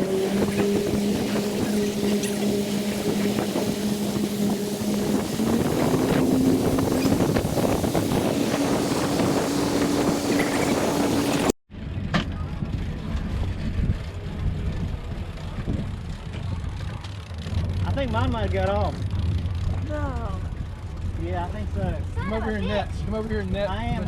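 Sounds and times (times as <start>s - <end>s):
water and wind rushing: 0.0s - 11.6s
low rumble: 0.0s - 22.2s
motorboat engine running: 0.0s - 24.0s.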